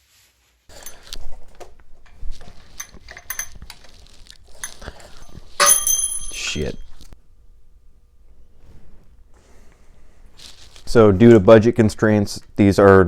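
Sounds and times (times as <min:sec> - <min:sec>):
small metal parts clinking: 0:00.7 - 0:07.2.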